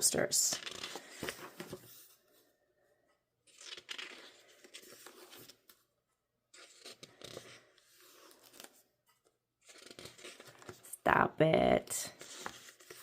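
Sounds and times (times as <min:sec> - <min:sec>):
paper rustling and scraping: 0:00.5 - 0:02.2, 0:03.5 - 0:05.8, 0:06.5 - 0:08.8, 0:09.6 - 0:10.9, 0:12.1 - 0:13.0.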